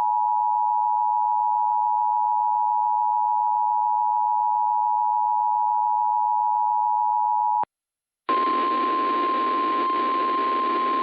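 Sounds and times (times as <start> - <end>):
single-tone warning alarm: 8.3 - 11.0.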